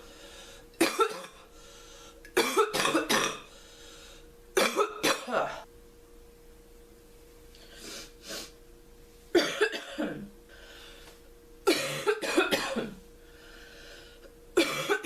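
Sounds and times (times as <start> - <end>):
noisy breaths: 0.0 - 0.8, 1.4 - 2.3, 3.5 - 4.4, 7.5 - 8.6, 10.4 - 11.3, 13.2 - 14.4
girl's barking cough: 0.8 - 1.4, 2.4 - 3.4, 4.6 - 5.6, 9.4 - 10.2, 11.7 - 13.0, 14.6 - 15.0.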